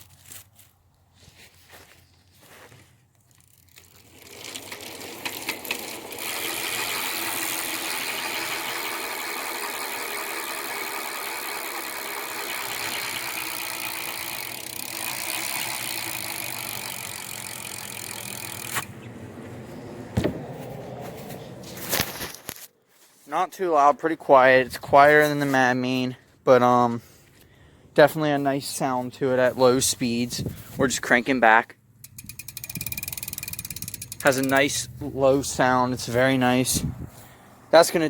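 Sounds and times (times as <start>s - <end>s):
bike hub clicking buzz: 3.4s - 19.0s, 32.0s - 34.8s.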